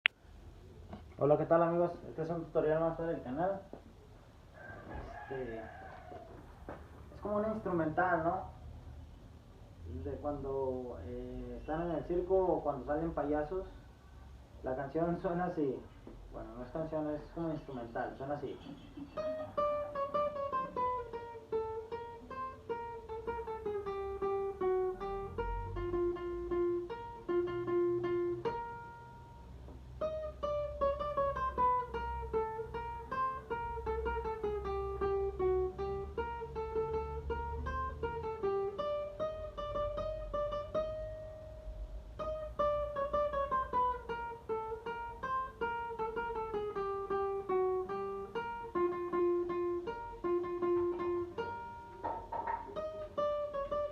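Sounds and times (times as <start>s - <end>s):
guitar playing circus melody: 19.0s - 53.9s.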